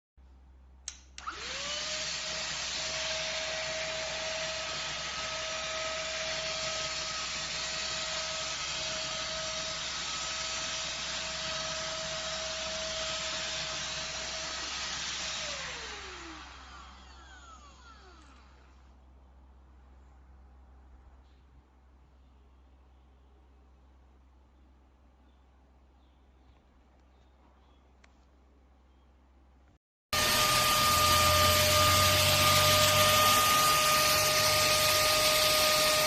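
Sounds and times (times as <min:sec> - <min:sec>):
handheld vacuum cleaner motor whine: 0:01.2 - 0:18.8, 0:30.2 - 0:36.0.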